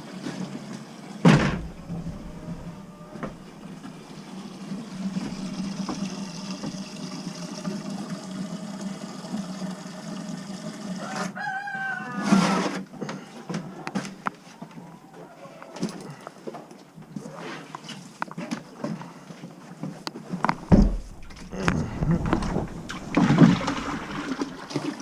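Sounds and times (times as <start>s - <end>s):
rooster crowing: 1.6s - 4.0s, 11.0s - 12.7s, 14.8s - 15.9s
steady low hum: 20.5s - 24.7s.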